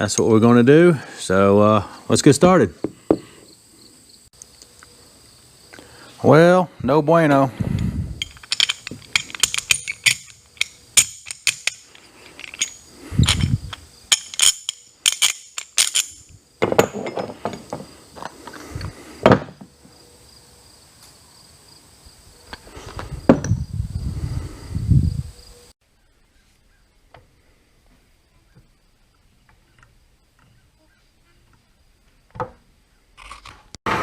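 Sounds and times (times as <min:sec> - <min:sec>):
metal tools clinking: 0:08.2 - 0:17.8.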